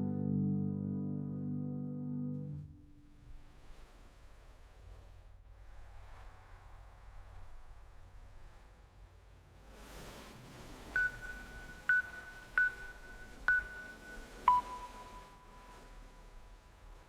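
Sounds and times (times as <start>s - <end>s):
short electronic beeps: 11.0s - 15.7s.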